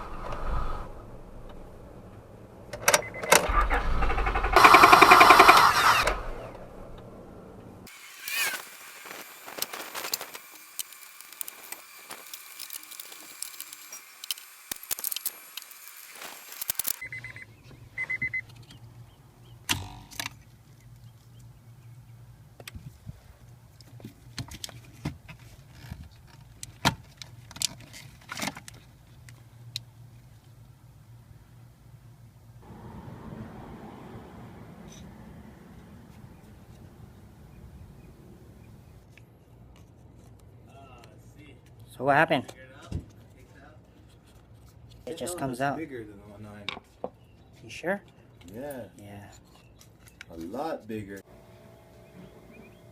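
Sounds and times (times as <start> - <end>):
loud noise: 3.4 - 10.9
low steady hum: 6.0 - 7.9.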